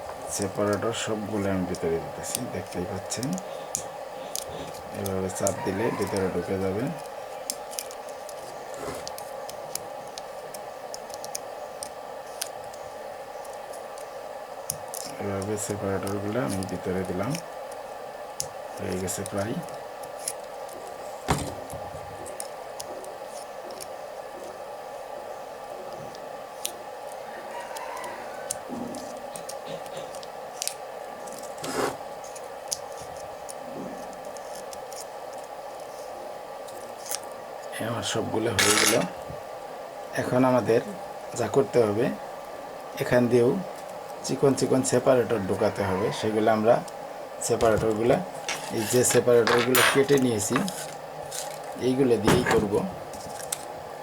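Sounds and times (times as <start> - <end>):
steady background hum: 0.0 - 54.0
steady background noise: 0.0 - 54.0
paper clicking and scratching: 6.9 - 12.8, 34.0 - 36.0
scrape: 8.8 - 9.1, 31.6 - 32.0, 48.5 - 49.2.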